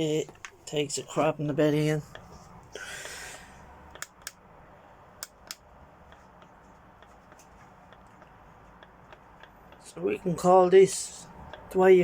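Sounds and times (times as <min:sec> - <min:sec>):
sharp clicks: 0:03.9 - 0:04.4, 0:05.2 - 0:06.5.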